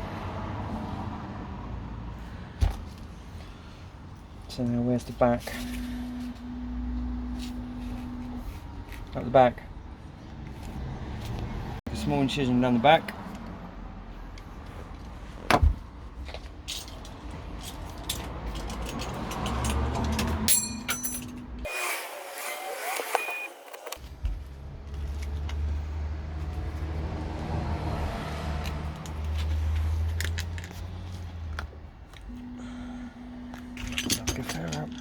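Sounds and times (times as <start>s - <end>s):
low steady rumble: 31.2s - 35.0s.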